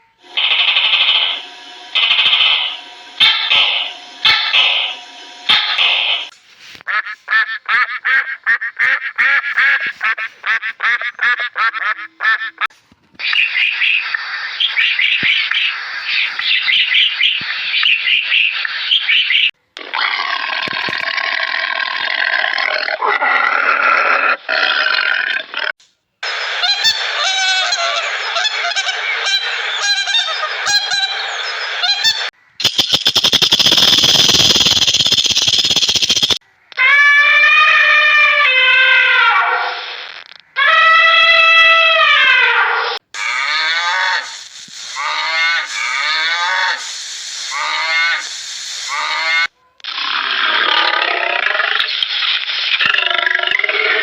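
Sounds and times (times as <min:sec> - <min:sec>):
flock noise: 0:00.0 - 0:06.3
geese honking: 0:00.0 - 0:06.3, 0:26.6 - 0:32.3, 0:40.6 - 0:46.9
hissy sound: 0:00.2 - 0:06.8, 0:43.2 - 0:49.5
duck quacking: 0:06.9 - 0:12.7.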